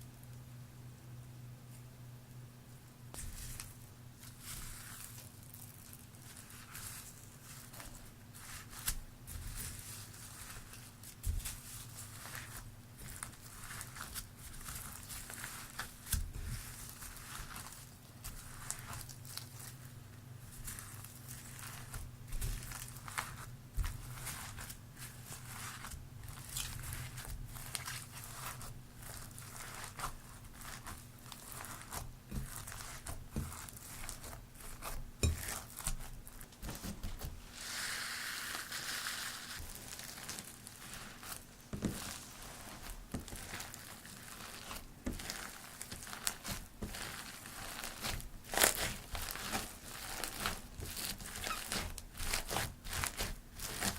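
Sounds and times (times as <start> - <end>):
slime crackling and popping: 38.4 - 53.9.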